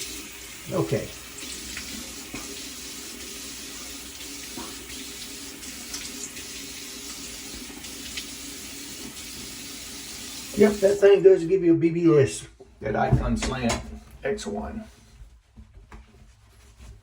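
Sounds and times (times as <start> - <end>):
tap water running into sink: 0.0 - 11.0.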